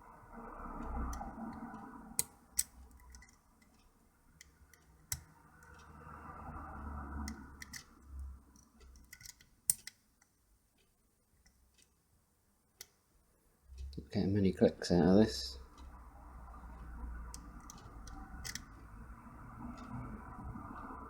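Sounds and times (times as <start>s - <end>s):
lock pick ticking and scraping: 0.8s - 5.8s, 7.2s - 10.4s, 17.2s - 18.9s.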